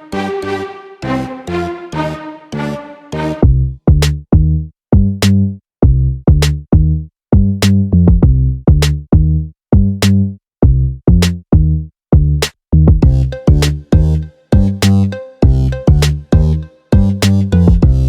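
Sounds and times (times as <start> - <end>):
electronic beat music: 0.0 - 3.6, 13.0 - 18.0
deep bass notes: 3.2 - 18.0.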